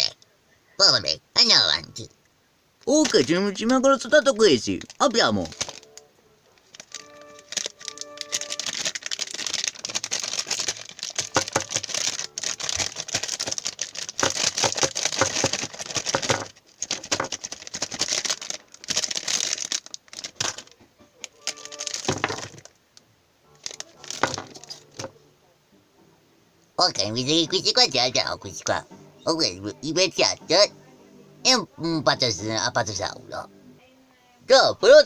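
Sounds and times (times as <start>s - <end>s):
foil packets crinkling and tearing: 2.9s - 6.0s, 6.6s - 22.8s, 23.6s - 25.1s.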